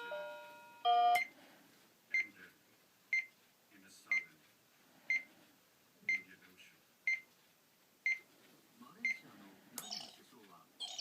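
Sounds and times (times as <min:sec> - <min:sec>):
alarm clock beeping: 0:00.0 - 0:01.3, 0:09.8 - 0:10.2, 0:10.8 - 0:11.0.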